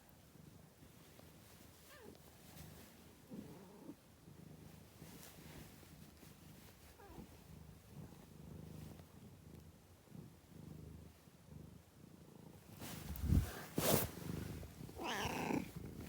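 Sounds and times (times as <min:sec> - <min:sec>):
cat purring: 0:00.0 - 0:16.0.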